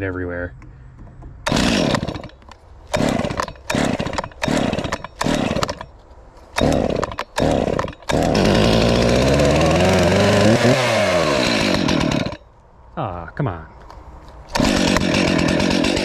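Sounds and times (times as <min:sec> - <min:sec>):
chainsaw starting and running: 0:01.5 - 0:05.9, 0:06.5 - 0:12.5, 0:14.5 - 0:16.0.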